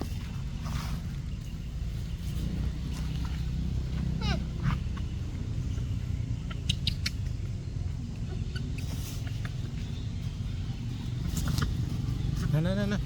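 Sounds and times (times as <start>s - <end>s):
baby monkey squeaking: 4.1s - 7.5s, 8.1s - 10.1s.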